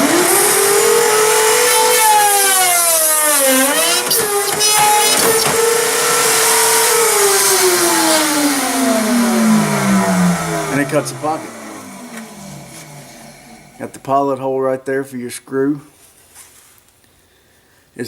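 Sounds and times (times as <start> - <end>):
pocket cutter motor whining: 0.0 - 14.0.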